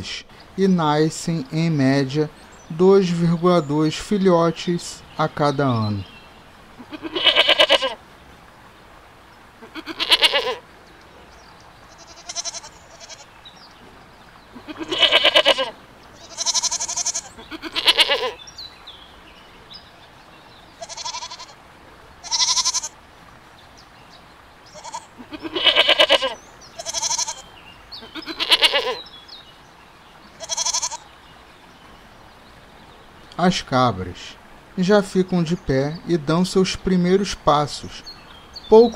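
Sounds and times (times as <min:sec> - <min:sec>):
goats bleating: 0:06.8 - 0:08.0, 0:09.6 - 0:10.6, 0:11.9 - 0:13.3, 0:14.5 - 0:18.4, 0:20.8 - 0:21.6, 0:22.2 - 0:23.0, 0:24.7 - 0:29.0, 0:30.3 - 0:31.1.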